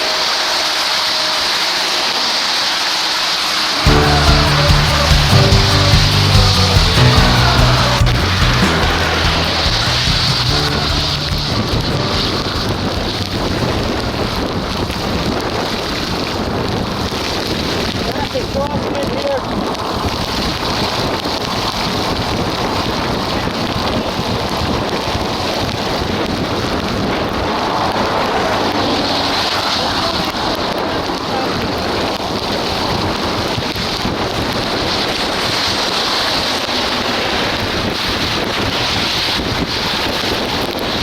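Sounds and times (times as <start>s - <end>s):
rain: 0.0s - 41.0s
wind buffeting microphone: 11.4s - 41.0s.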